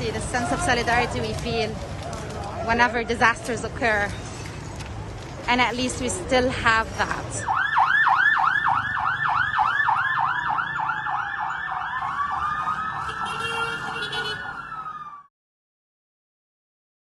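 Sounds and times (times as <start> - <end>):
fast yelping siren: 7.4 - 15.3
slower wailing siren: 7.4 - 15.3.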